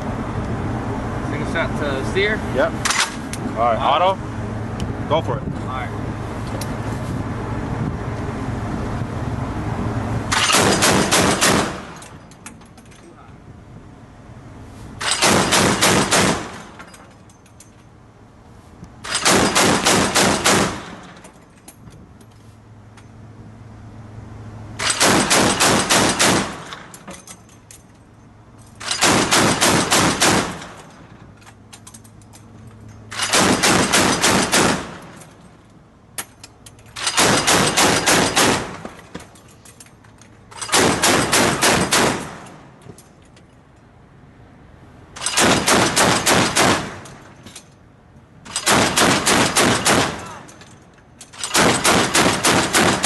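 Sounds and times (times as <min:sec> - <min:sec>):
machine gun firing bursts: 0:10.4 - 0:11.8, 0:15.1 - 0:16.6, 0:19.1 - 0:21.0, 0:24.8 - 0:26.7, 0:28.9 - 0:30.8, 0:33.2 - 0:35.0, 0:37.2 - 0:38.8, 0:40.7 - 0:42.4, 0:45.3 - 0:46.9, 0:48.6 - 0:50.2, 0:51.5 - 0:53.0.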